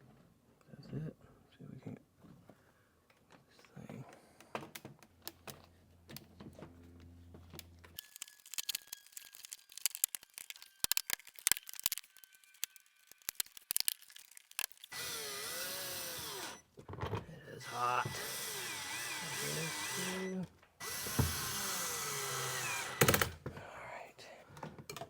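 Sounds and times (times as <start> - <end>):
loud steady whir: 17.6 - 23.2.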